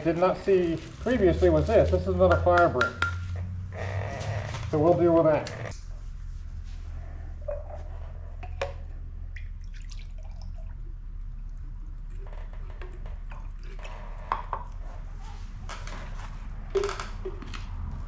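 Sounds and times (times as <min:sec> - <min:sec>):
steady low hum: 0:02.9 - 0:13.8.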